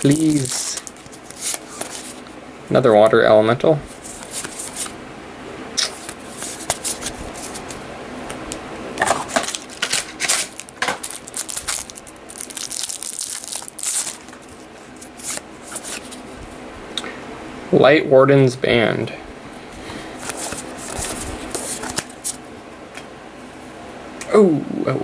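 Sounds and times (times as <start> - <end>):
cards and wrappers rustling: 0.0 - 3.2, 3.9 - 5.0, 6.0 - 7.8, 9.0 - 16.4, 19.8 - 22.4.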